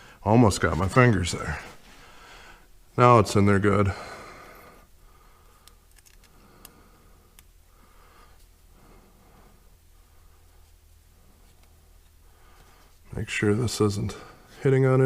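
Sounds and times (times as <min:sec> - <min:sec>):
faint sharp clicks: 0:05.6 - 0:07.5
soft handling rustle: 0:10.0 - 0:14.8.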